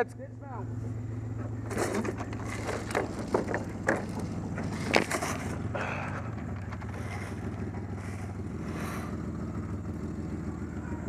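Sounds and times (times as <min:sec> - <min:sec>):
pickup truck engine running: 0:00.6 - 0:11.0
sharp clicks and knocks: 0:01.4 - 0:07.2.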